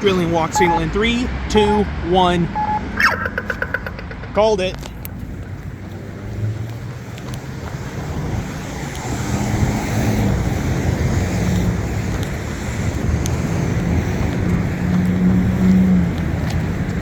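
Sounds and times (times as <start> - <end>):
road traffic passing: 0.0 - 17.0
wind buffeting microphone: 5.1 - 17.0.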